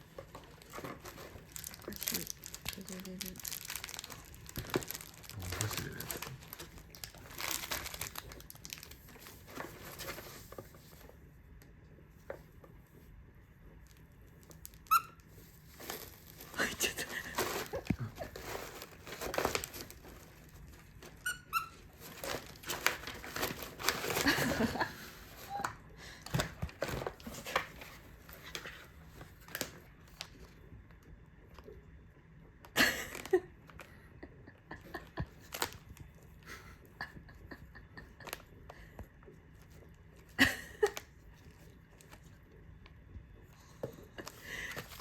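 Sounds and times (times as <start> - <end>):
packaging crinkling: 0.1 - 10.8, 13.8 - 30.5, 35.0 - 36.2.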